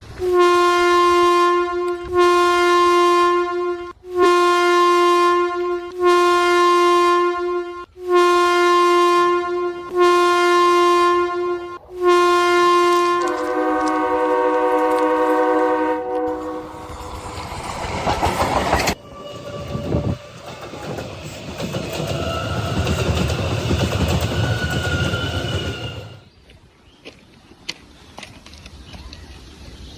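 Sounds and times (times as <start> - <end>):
train horn blasts: 0.1 - 17.3, 18.9 - 20.5
train rumbling and clattering past: 16.2 - 26.2.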